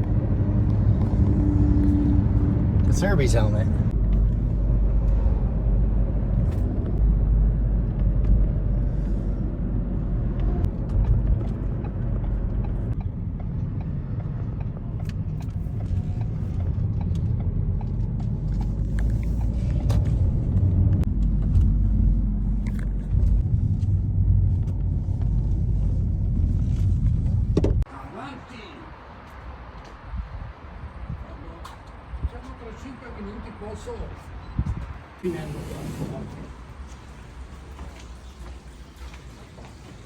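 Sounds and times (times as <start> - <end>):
car driving rumble: 0.0 - 27.9.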